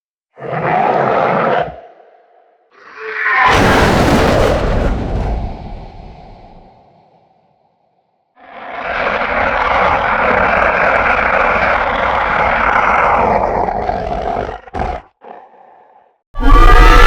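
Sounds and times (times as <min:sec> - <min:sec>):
harsh creature cry: 0:02.8 - 0:03.8, 0:08.4 - 0:17.0.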